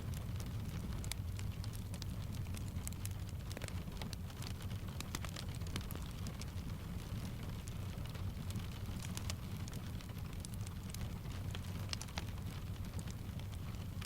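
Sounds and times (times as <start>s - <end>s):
steady rain: 0.0s - 14.0s
wood fire crackling: 0.0s - 14.0s.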